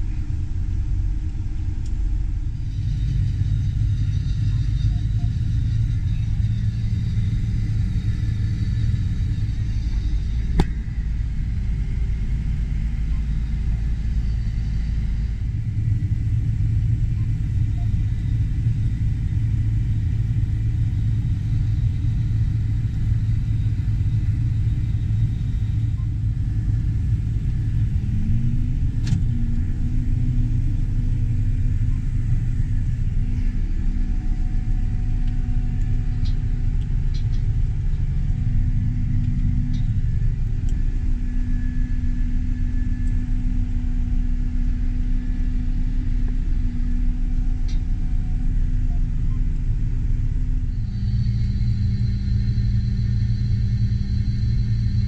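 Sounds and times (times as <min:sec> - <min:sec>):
harvest machinery rumbling: 0:00.0 - 0:42.8.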